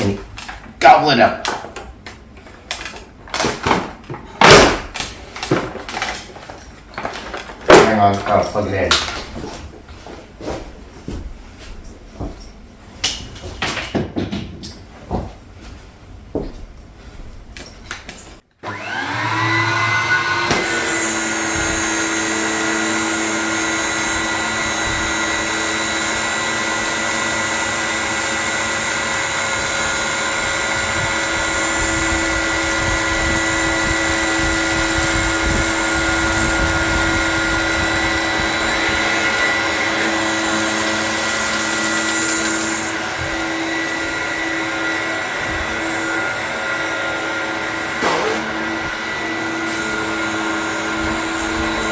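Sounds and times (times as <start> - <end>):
vacuum cleaner whining: 18.5 - 51.9.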